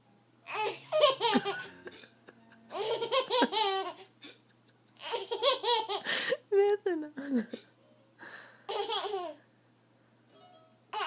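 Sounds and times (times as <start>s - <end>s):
baby laughing: 0.5s - 6.1s, 8.7s - 9.4s.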